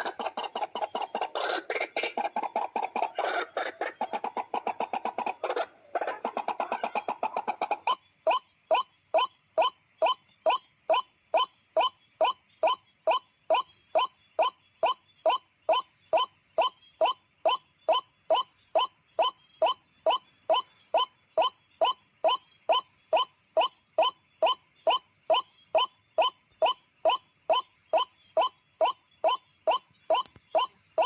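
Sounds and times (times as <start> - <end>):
waterhen calling: 0.0 - 8.0.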